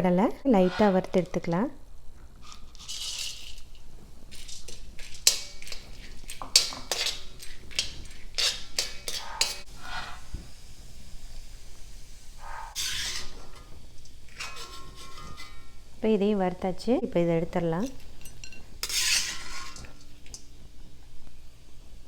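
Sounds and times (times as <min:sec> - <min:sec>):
metal spatula scraping a pan: 0:00.5 - 0:01.6, 0:02.4 - 0:03.7, 0:04.4 - 0:10.4, 0:12.4 - 0:15.9, 0:18.2 - 0:20.5.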